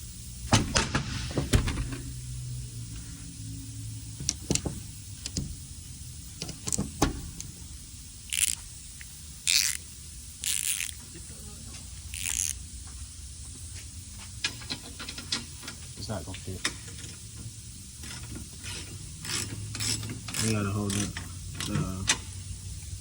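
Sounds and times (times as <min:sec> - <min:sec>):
low steady hum: 0:00.0 - 0:23.0
ratchet rasping: 0:08.3 - 0:11.0, 0:12.1 - 0:12.6, 0:18.0 - 0:22.4.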